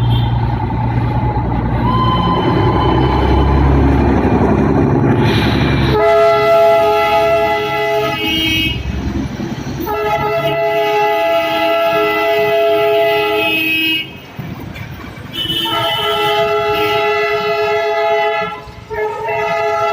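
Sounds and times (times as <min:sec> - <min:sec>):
train running with low rumble: 0:00.0 - 0:19.9
train horn blasts: 0:05.9 - 0:08.9, 0:09.8 - 0:14.1, 0:15.4 - 0:19.9.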